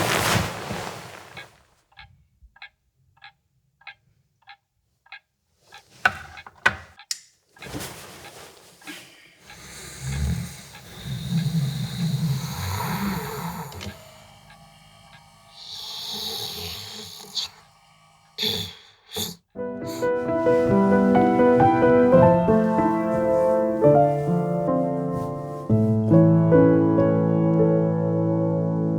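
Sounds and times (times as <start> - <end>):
person snoring: 9.5 - 21.8
piano music: 19.5 - 28.9.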